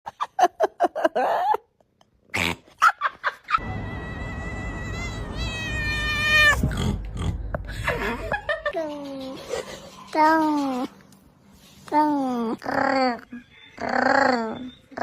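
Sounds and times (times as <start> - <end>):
cat long high-pitched cry: 3.6 - 6.6.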